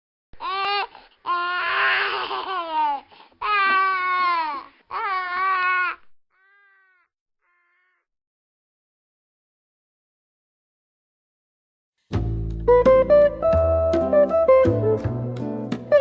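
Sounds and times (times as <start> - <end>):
baby crying: 0.4 - 8.1.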